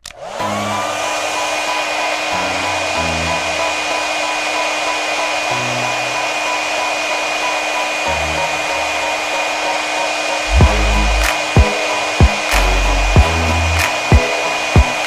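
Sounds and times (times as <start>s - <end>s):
hot-air gun hissing: 0.2s - 15.0s
background music with bass: 10.5s - 14.2s.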